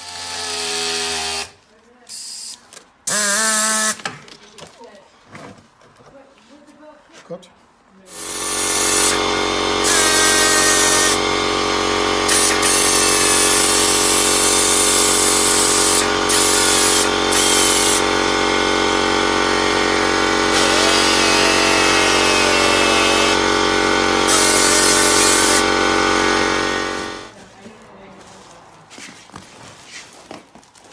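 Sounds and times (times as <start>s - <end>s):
electric motor and hydraulic pump: 0.0s - 4.1s, 8.1s - 27.4s.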